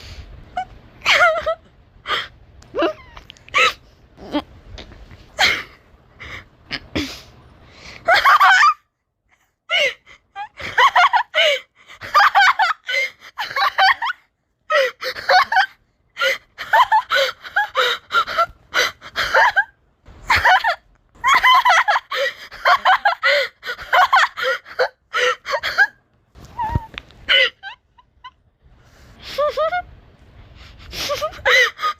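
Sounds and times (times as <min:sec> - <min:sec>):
person laughing: 0:29.2 - 0:29.9, 0:30.8 - 0:31.9.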